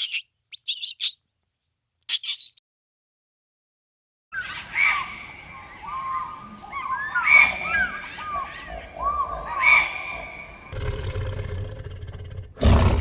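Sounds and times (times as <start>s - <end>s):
birds chirping: 0.0s - 1.3s.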